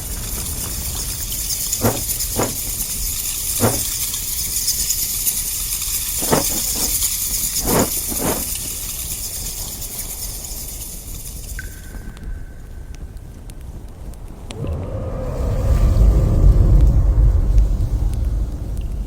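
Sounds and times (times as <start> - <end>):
airy cave hiss: 0.0 - 19.0
footsteps on stone: 1.8 - 2.7, 3.6 - 3.9, 6.2 - 7.0, 7.6 - 8.5.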